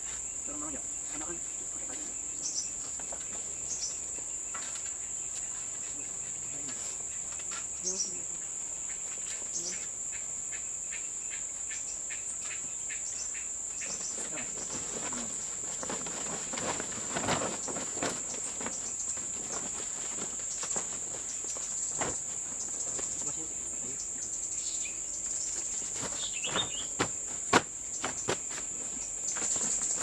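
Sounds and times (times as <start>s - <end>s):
insects droning: 0.0s - 30.0s
wooden sticks knocking and rustling: 25.6s - 30.0s.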